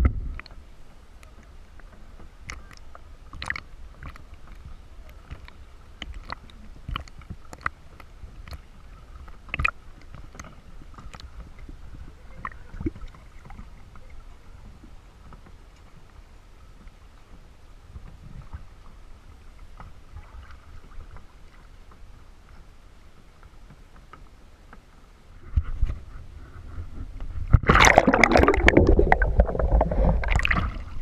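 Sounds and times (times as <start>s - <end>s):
low steady rumble: 26.2s - 31.0s
paddle splashing and knocking: 27.0s - 31.0s.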